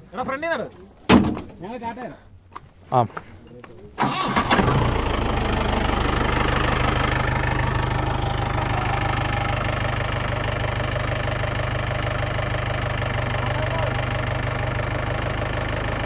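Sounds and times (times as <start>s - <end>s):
car engine idling: 4.0s - 16.0s.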